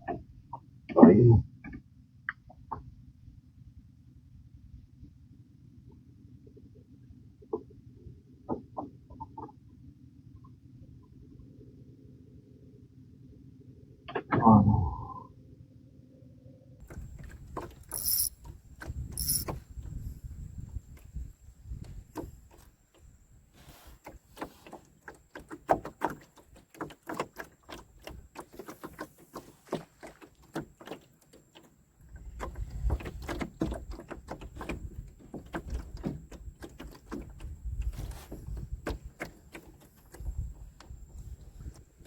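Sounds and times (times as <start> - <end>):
fishing tackle clicking and knocking: 17.8 - 18.3, 19.2 - 19.5.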